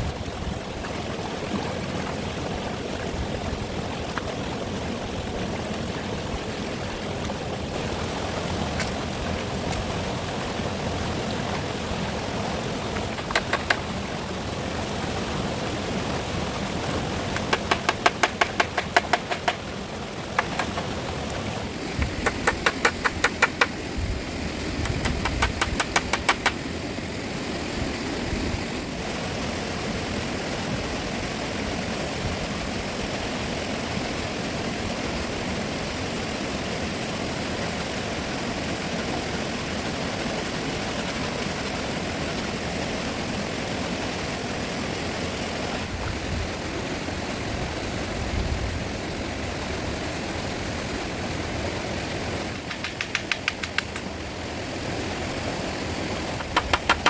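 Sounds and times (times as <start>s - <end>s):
river rushing: 0.0s - 57.0s
sharp knocks: 17.4s - 19.6s, 24.8s - 26.6s, 56.4s - 57.0s.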